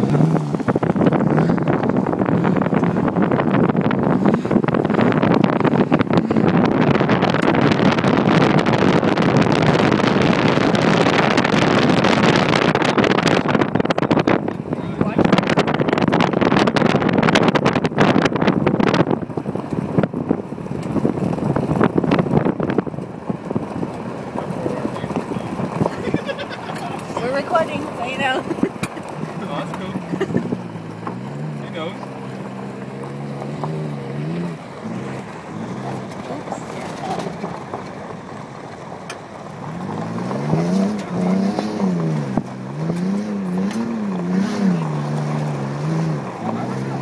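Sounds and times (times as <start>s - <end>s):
vehicle engine and tyre noise: 0.0s - 47.0s
wind buffeting microphone: 0.0s - 47.0s
knocks and rattles over bumps: 10.8s - 47.0s.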